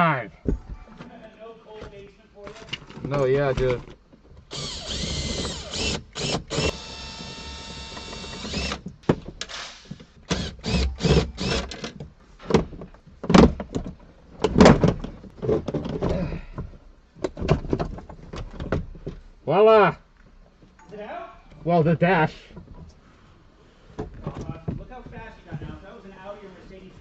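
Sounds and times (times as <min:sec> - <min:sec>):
clunks and knocks: 0:01.7 - 0:04.5, 0:06.5 - 0:19.3, 0:23.9 - 0:25.9
power tool whine: 0:04.5 - 0:08.8, 0:09.5 - 0:11.8.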